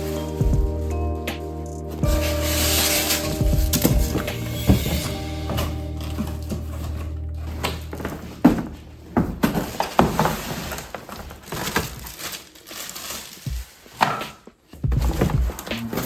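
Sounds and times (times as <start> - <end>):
packaging crackling and parts clicking: 5.6 - 14.3.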